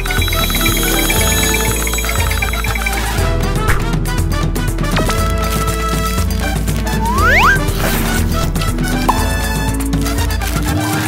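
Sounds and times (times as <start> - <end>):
background music with steady beat: 0.0 - 11.0
brief sliding tone: 7.0 - 7.6.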